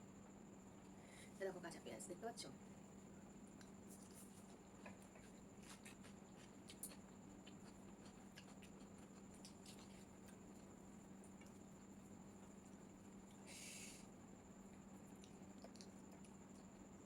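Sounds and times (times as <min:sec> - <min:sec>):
low steady hum: 0:00.0 - 0:17.0
quiet eating and chewing: 0:00.1 - 0:17.0.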